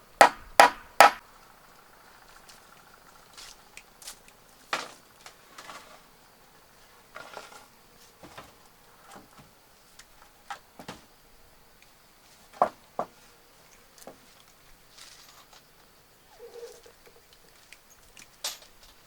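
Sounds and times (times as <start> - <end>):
knocks of wooden material handled: 0.2 - 1.2, 10.5 - 11.1, 12.5 - 13.2.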